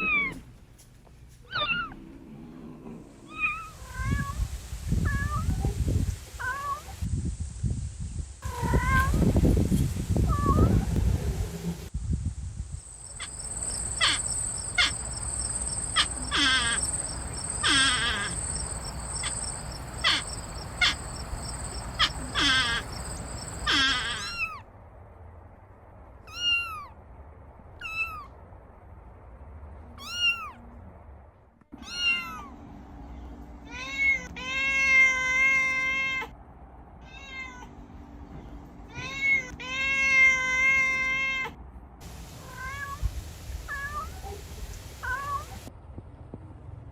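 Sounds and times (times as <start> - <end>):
high insect trill: 12.6 - 24.3
kittens meowing: 13.2 - 24.6, 26.3 - 26.9, 27.8 - 28.3, 30.0 - 30.6, 31.8 - 32.5.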